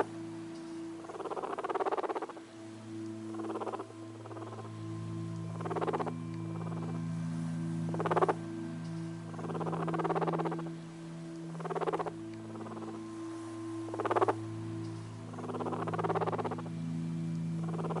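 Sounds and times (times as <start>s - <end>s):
steady low hum: 0.0s - 18.0s
guinea pig purring: 1.2s - 2.3s, 9.4s - 10.5s, 11.6s - 12.9s, 15.4s - 16.6s.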